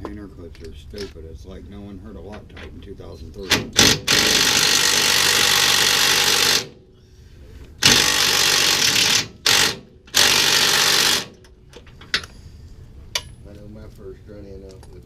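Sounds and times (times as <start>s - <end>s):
pneumatic hammering tool: 3.4s - 6.9s, 7.8s - 11.5s.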